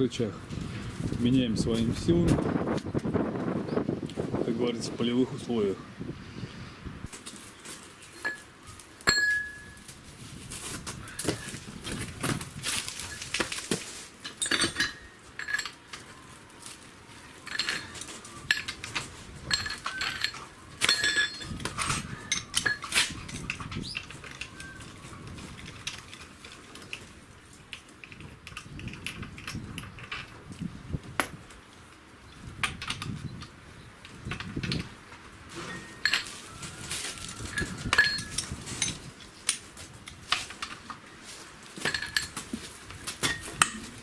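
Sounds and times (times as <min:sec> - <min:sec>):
metal objects clinking: 0:08.2 - 0:09.8, 0:14.2 - 0:16.0, 0:17.4 - 0:24.9, 0:35.5 - 0:36.4, 0:37.5 - 0:39.0, 0:41.8 - 0:42.4.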